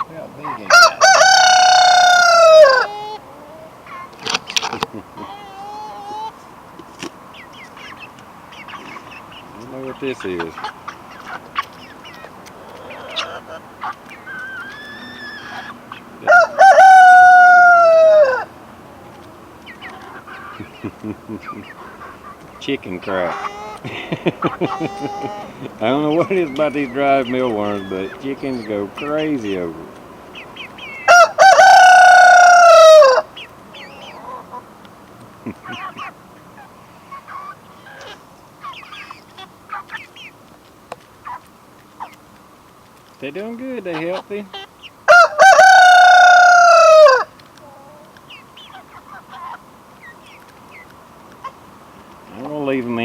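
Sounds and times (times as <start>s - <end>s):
chickens clucking and peeping: 0.0s - 53.0s
rooster crowing: 0.7s - 3.3s, 14.8s - 18.5s, 31.0s - 33.3s, 45.1s - 47.3s.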